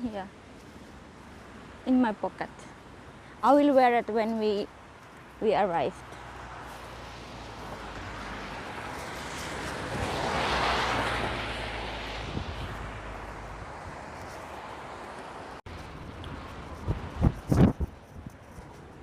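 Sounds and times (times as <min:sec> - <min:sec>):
wind rumble on microphone: 0:07.1 - 0:19.0.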